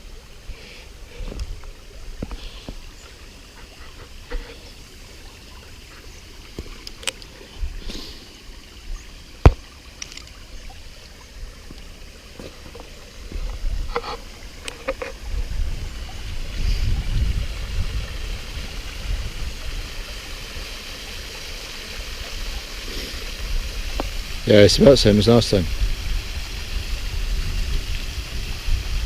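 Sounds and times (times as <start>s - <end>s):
stream and small waterfall: 0.0s - 29.0s
wind rumble on microphone: 13.3s - 20.6s, 25.6s - 29.0s.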